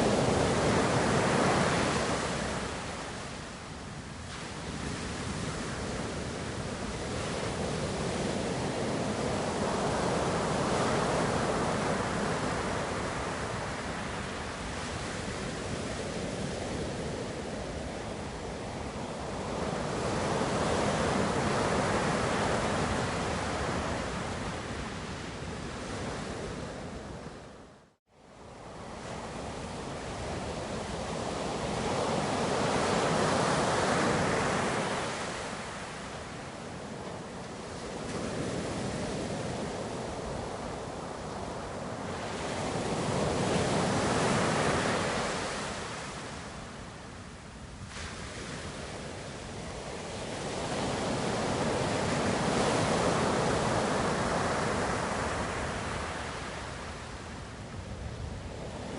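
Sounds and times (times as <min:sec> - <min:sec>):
ocean waves surging: 0:28.9 - 0:46.7.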